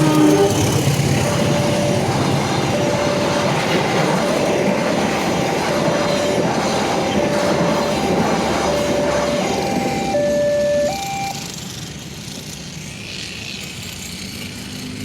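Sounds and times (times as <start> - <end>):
crossing signal electronic tone: 0.0 - 11.5
train rumbling past: 0.0 - 15.0
wheels clattering on rails: 0.0 - 15.0.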